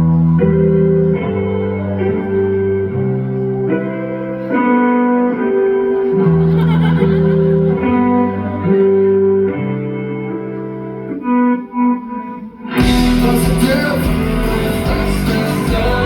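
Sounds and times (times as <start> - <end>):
bass line: 0.0 - 4.2, 12.8 - 16.0
electric guitar chords: 0.0 - 16.0.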